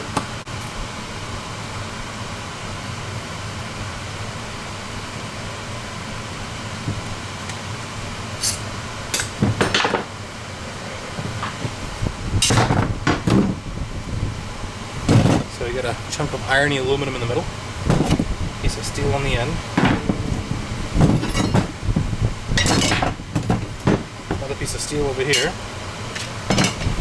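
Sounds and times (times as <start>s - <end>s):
steady hum: 0.0s - 27.0s
metal parts clinking and clanking: 8.4s - 10.0s, 21.0s - 21.8s, 22.6s - 23.6s, 25.3s - 26.9s.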